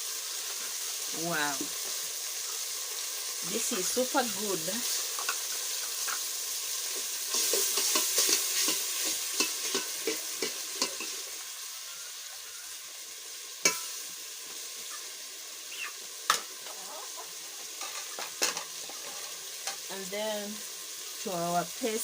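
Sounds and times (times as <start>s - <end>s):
paste sizzling in a pot: 0.0s - 22.0s
spoon scraping a pot: 17.8s - 19.8s.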